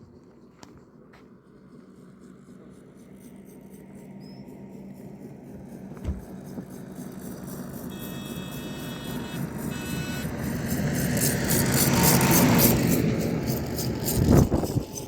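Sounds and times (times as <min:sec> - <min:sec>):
low thump: 0:06.0 - 0:06.4
vehicle engine humming: 0:06.0 - 0:06.6.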